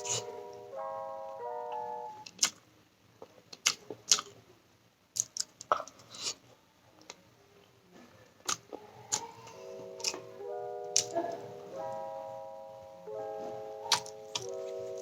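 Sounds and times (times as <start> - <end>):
background music: 0.0 - 2.3, 8.8 - 15.0
mouth clicks: 2.2 - 2.6, 3.2 - 4.4, 8.4 - 9.4
person chewing food: 10.9 - 11.2, 13.9 - 15.0.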